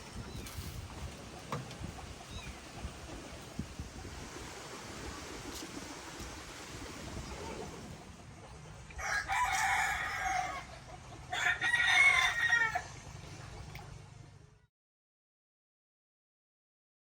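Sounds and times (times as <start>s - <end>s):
rooster crowing: 9.0s - 12.9s.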